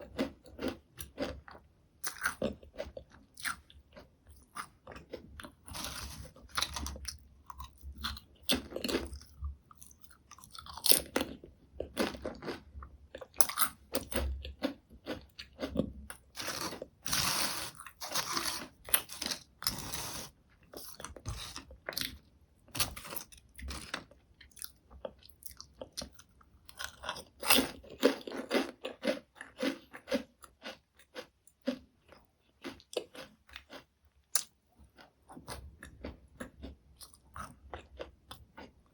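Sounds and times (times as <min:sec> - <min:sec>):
crunching potato chips: 0:00.0 - 0:38.7.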